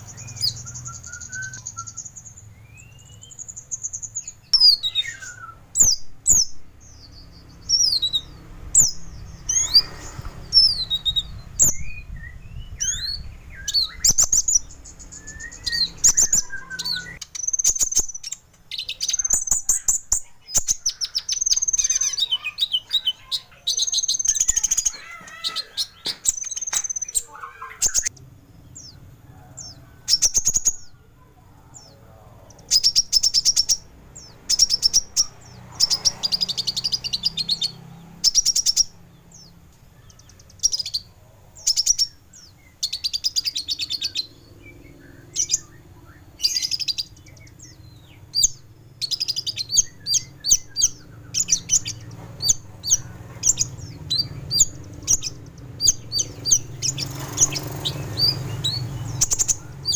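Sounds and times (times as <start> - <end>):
bird chirping high: 0.0 - 59.9.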